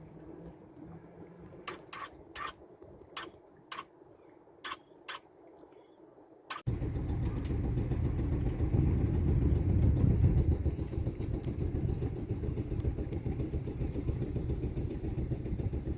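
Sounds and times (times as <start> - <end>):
faint mechanical ticking: 6.5 - 15.9
boat engine rumbling: 6.6 - 15.9.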